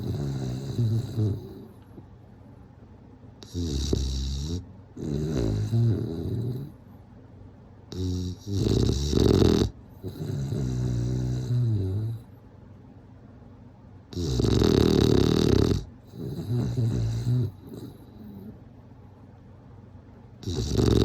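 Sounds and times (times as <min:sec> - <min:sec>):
dog snoring: 0:00.0 - 0:02.0, 0:03.4 - 0:06.8, 0:07.9 - 0:12.3, 0:14.1 - 0:18.6, 0:20.4 - 0:21.0.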